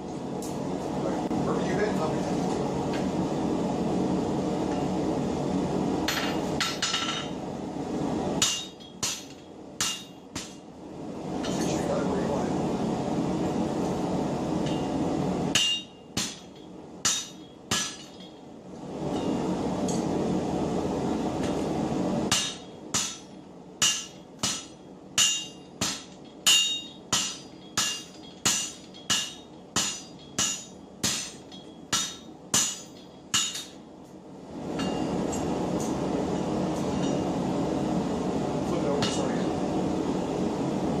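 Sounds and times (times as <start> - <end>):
hammers ringing on an anvil: 8.4 - 10.6, 15.6 - 18.4, 22.3 - 33.8.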